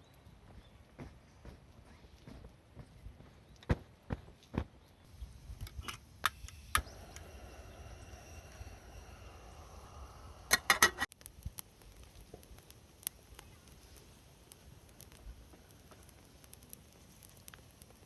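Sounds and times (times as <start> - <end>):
faint steady hiss: 5.0 - 18.0.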